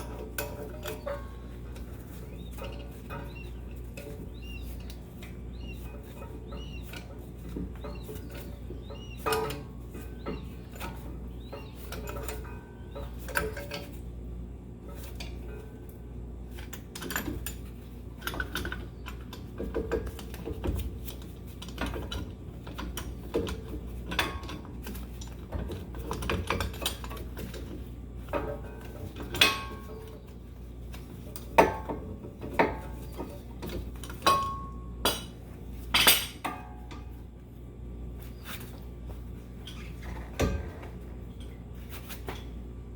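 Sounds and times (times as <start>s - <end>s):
metal tools clinking and clanking: 0.0s - 14.0s, 21.6s - 30.2s, 31.3s - 37.1s.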